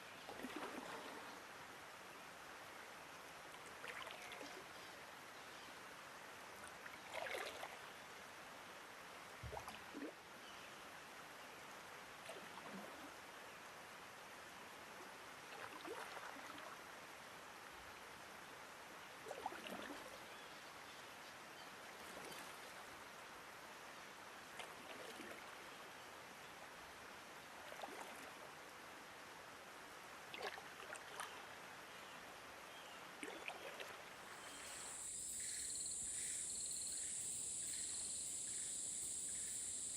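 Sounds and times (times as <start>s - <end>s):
small water splash: 0.2s - 1.4s, 3.7s - 4.8s, 6.7s - 7.9s, 9.4s - 10.2s, 15.5s - 16.8s, 19.2s - 20.2s, 24.5s - 25.6s, 27.6s - 28.5s, 30.3s - 31.6s, 33.1s - 39.9s
river water flowing: 26.2s - 39.9s
insects chorus: 34.3s - 39.9s.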